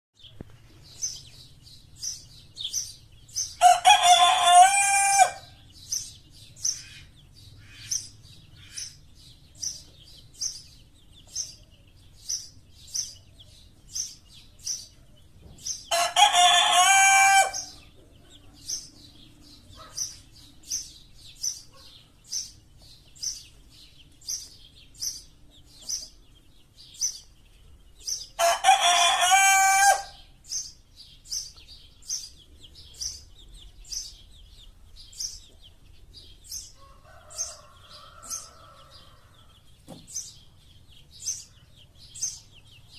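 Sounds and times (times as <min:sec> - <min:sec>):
chick chirping: 0:00.2 - 0:42.9
rooster crowing: 0:03.6 - 0:05.6, 0:15.9 - 0:17.7, 0:28.4 - 0:30.2, 0:36.8 - 0:39.5.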